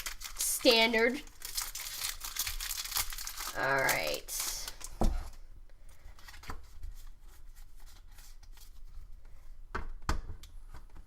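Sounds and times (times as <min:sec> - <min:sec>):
trading cards rustling: 0:00.0 - 0:08.8.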